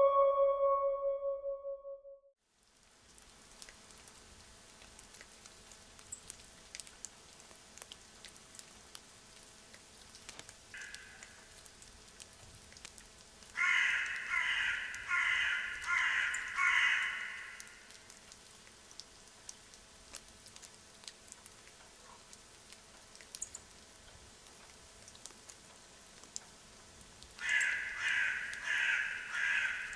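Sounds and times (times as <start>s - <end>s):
light rain pattering: 2.4s - 29.9s
water drips: 2.6s - 29.9s
crow cawing: 10.8s - 11.2s, 13.6s - 17.9s, 27.4s - 29.9s.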